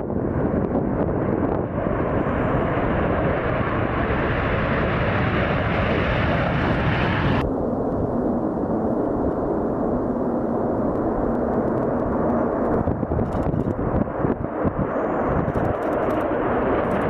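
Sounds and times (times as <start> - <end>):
jet engine roaring: 0.0 - 17.0.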